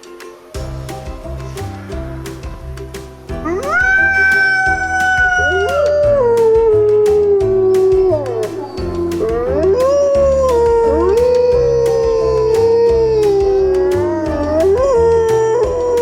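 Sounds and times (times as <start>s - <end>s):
background music with steady beat: 0.0s - 16.0s
wolves howling: 3.7s - 16.0s.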